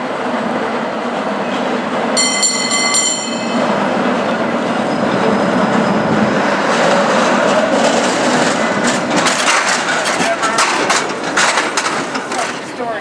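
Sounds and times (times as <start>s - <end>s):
rail vehicle rumbling on tracks: 0.0s - 13.0s
high ringing tone: 2.2s - 4.0s.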